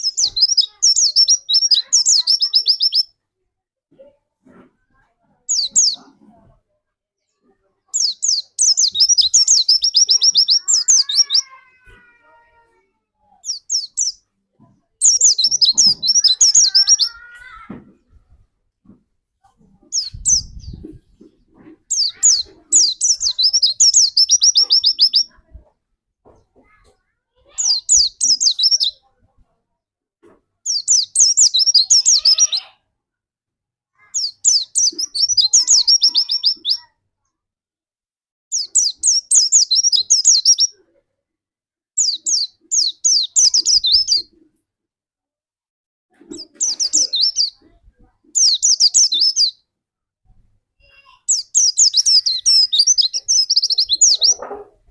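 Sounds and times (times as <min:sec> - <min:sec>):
bird chirping trills: 0:00.0 - 0:03.1, 0:07.4 - 0:11.6, 0:19.8 - 0:25.4, 0:34.0 - 0:36.9, 0:46.2 - 0:47.8, 0:48.4 - 0:49.6, 0:50.8 - 0:54.9.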